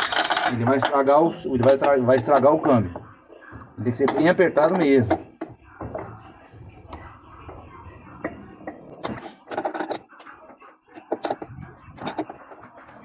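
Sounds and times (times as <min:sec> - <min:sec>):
wrench tightening bolts: 0:00.0 - 0:01.0.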